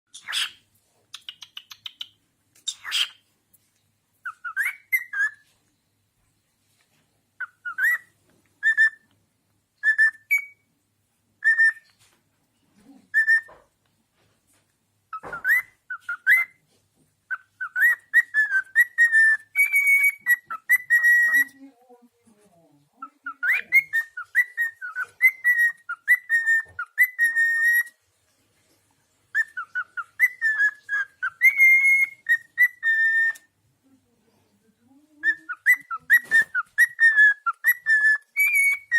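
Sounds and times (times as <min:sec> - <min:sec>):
cockatiel whistling: 0:00.2 - 0:00.6, 0:02.7 - 0:03.2, 0:04.2 - 0:05.5, 0:07.4 - 0:09.2, 0:09.8 - 0:10.6, 0:11.4 - 0:12.0, 0:13.1 - 0:13.6, 0:15.1 - 0:16.6, 0:17.3 - 0:21.6, 0:23.0 - 0:28.0, 0:29.3 - 0:33.5, 0:35.2 - 0:38.9.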